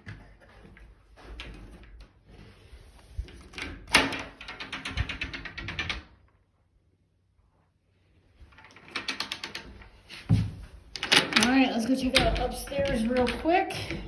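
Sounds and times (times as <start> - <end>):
clattering rattles: 8.5 - 14.0.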